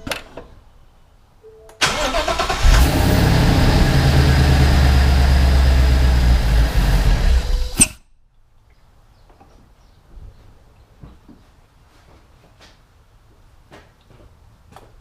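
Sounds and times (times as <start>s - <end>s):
car engine cranking and idling: 1.8s - 7.8s.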